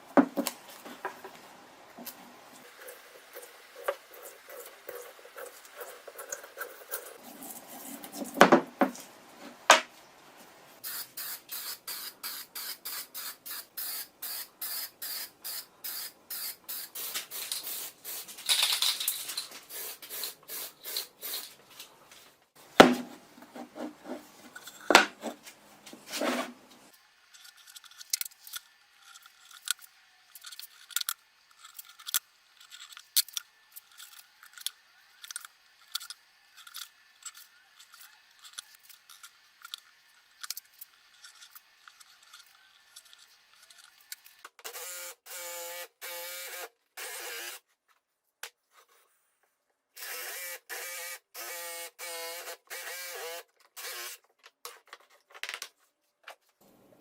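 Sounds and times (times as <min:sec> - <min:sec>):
hand tool scraping strokes: 0:02.2 - 0:08.4, 0:23.1 - 0:44.3.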